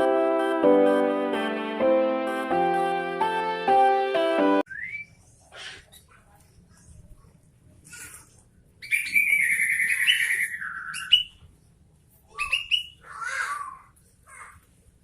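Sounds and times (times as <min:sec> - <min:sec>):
bird singing: 0:08.8 - 0:11.4.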